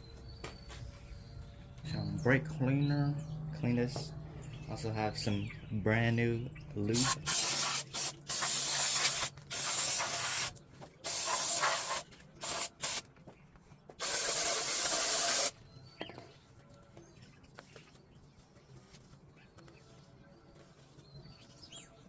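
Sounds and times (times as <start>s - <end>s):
aerosol spray hissing bursts: 7.0s - 13.0s, 14.0s - 15.6s.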